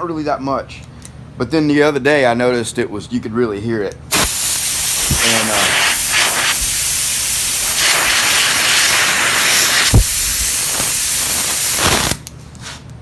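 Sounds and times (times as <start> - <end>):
compressed air hissing: 4.1 - 12.3
thump: 9.9 - 10.2.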